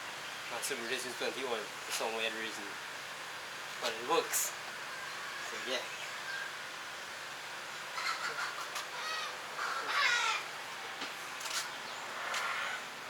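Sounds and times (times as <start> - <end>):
crow cawing: 8.0 - 10.5, 12.2 - 12.9.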